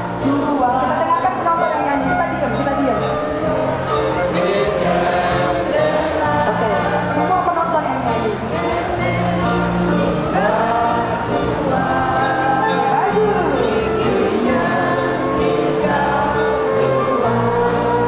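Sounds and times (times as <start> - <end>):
band playing: 0.0 - 18.0
voices singing: 0.0 - 18.0.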